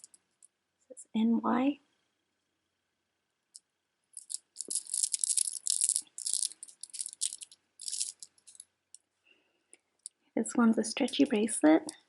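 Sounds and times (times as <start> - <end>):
beads clattering: 0.0 - 0.5, 3.6 - 9.0.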